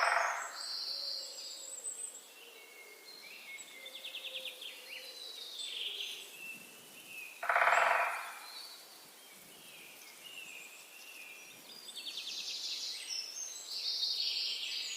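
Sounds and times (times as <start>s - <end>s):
low rattling bird call: 0.0s - 0.6s, 7.4s - 8.5s
birds chirping and trilling: 0.0s - 14.9s.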